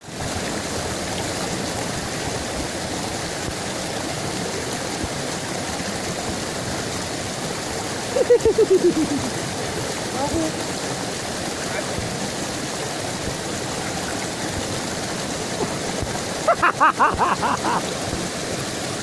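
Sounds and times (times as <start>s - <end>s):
river water flowing: 0.0s - 19.0s.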